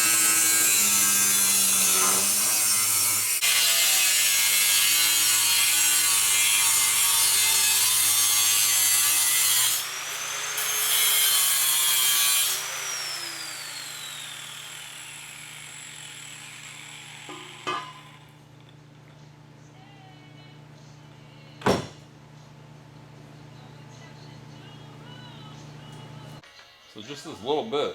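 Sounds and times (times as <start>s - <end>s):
power tool cutting steel: 0.0s - 18.2s.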